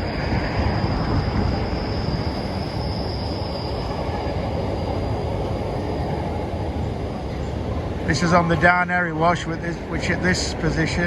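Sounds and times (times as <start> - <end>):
high wheel squeal: 0.0 - 6.3
train wheels rumbling on rail: 0.0 - 11.0.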